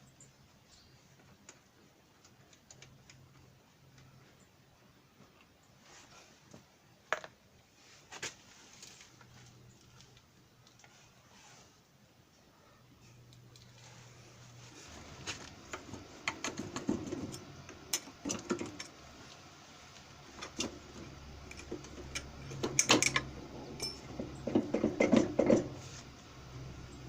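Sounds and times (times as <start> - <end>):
faint low hum: 0.0 - 27.0
metal tools clinking: 21.5 - 24.3.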